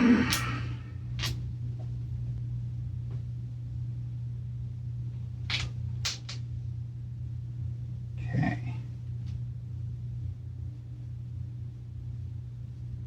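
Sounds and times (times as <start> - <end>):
steady low hum: 0.0 - 13.0
light clicks of small parts: 1.2 - 1.9, 5.5 - 6.5.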